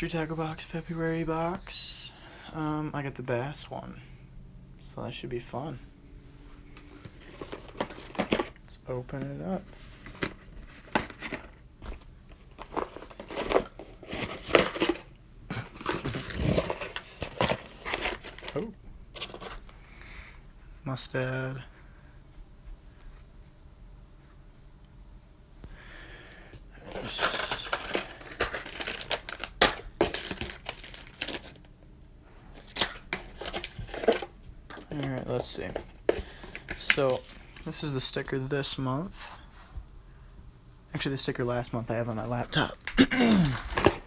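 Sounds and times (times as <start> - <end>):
packaging rustling and crinkling: 7.0 - 19.7, 26.8 - 31.7, 32.5 - 37.7, 42.2 - 44.0
plastic packaging crinkling: 26.9 - 31.7.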